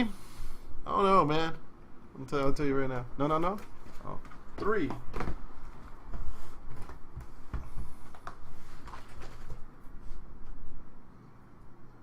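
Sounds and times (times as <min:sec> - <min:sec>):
cardboard rustling: 0:03.6 - 0:10.2.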